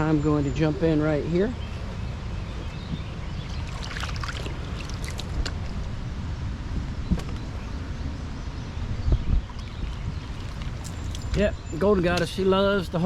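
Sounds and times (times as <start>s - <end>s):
water sloshing and splashing: 3.5s - 5.9s, 9.5s - 11.4s.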